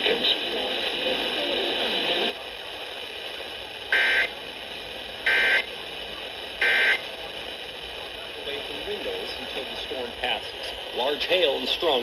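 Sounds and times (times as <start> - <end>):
steady radio hiss: 0.0 - 12.0
buzzy digital data tones: 3.9 - 4.4, 5.2 - 5.7, 6.6 - 7.0.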